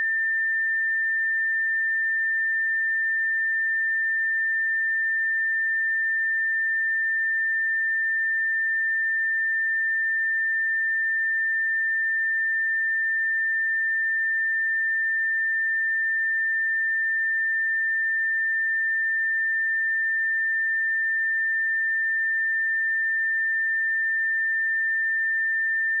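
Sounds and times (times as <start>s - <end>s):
high sine-wave test tone: 0.0s - 26.0s.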